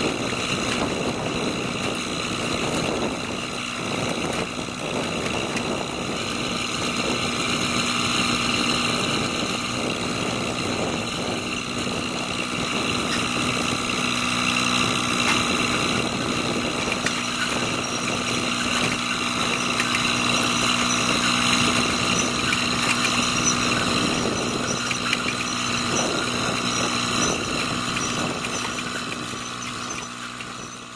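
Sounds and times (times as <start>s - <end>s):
loader engine droning: 0.0s - 30.9s.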